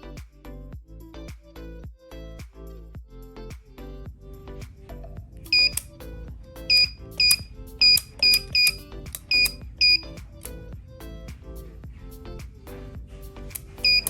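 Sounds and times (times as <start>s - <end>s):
background music: 0.0s - 14.0s
keypad lock beeps: 5.5s - 5.8s, 6.7s - 10.1s.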